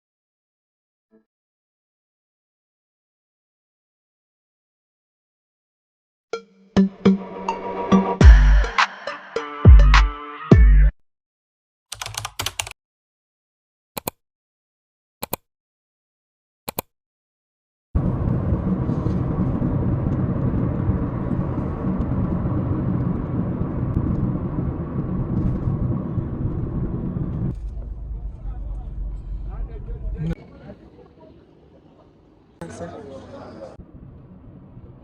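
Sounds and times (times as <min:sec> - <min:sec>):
short clicks: 0:14.0 - 0:14.2, 0:15.2 - 0:15.4, 0:16.7 - 0:16.9
car road and engine rumble: 0:18.0 - 0:30.4.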